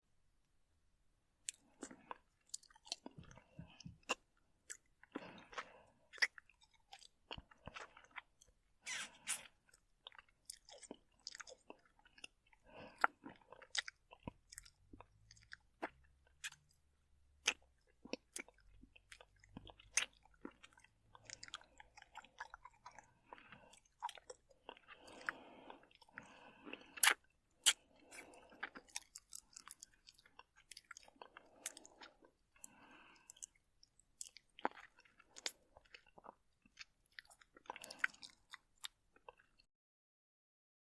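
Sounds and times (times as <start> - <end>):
mouth licking and slurping: 18.2 - 33.6, 34.2 - 38.6
tongue and lip clicks: 26.1 - 33.5.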